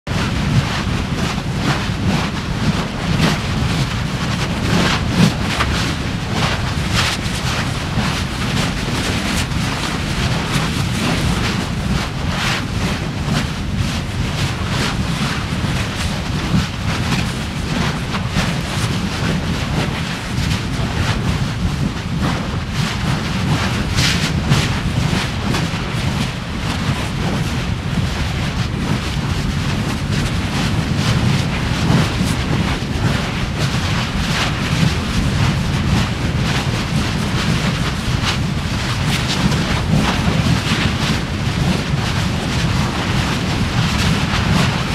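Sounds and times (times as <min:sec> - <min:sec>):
lava rumbling: 0:00.1 - 0:44.9
lava popping and cracking: 0:26.9 - 0:44.9.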